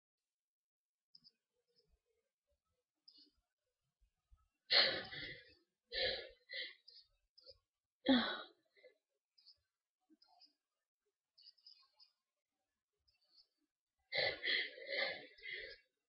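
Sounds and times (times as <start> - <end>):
person gasping breaths: 4.7 - 6.9, 14.1 - 15.8.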